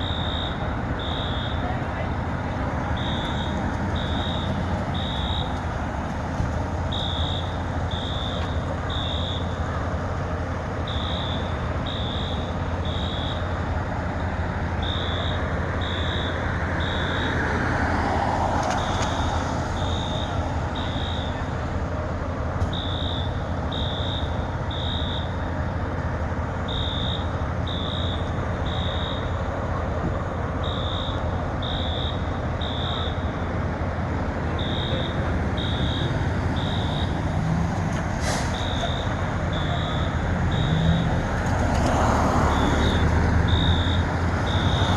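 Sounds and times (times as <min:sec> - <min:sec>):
fire alarm high beeps: 0:00.0 - 0:01.7, 0:03.0 - 0:05.6, 0:06.9 - 0:09.6, 0:10.8 - 0:13.6, 0:14.8 - 0:17.4, 0:18.8 - 0:21.5, 0:22.7 - 0:25.5, 0:26.7 - 0:29.5, 0:30.6 - 0:33.3, 0:34.5 - 0:37.3, 0:38.5 - 0:41.2, 0:42.0 - 0:44.9
fire engines idling rumble: 0:00.0 - 0:44.9.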